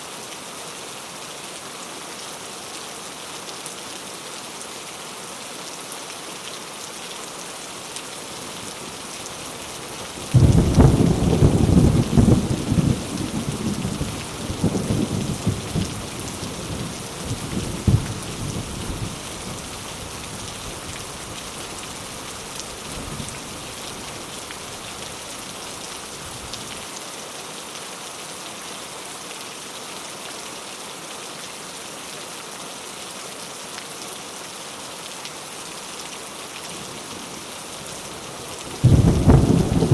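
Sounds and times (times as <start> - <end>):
steady rain falling: 0.0 - 39.9
thunder rumbling and crackling: 10.3 - 19.7, 38.7 - 39.9.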